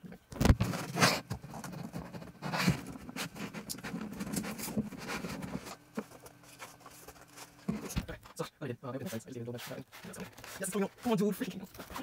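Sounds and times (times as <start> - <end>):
cardboard packaging rustling: 0.4 - 8.0.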